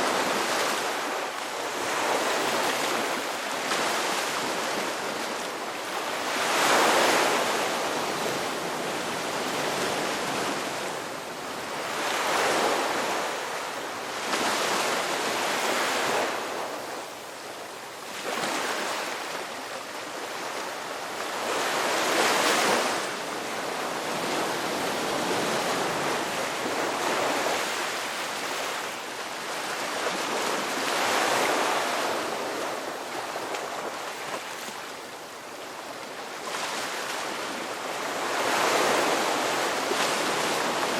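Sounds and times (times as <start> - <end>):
sea waves breaking on shore: 0.0 - 40.9.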